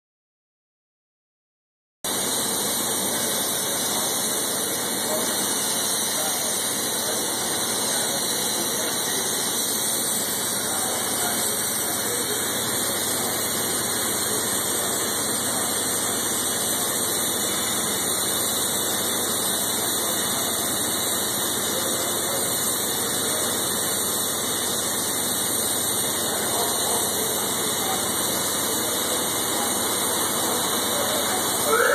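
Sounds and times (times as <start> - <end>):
welding arc hissing: 2.1 - 31.9.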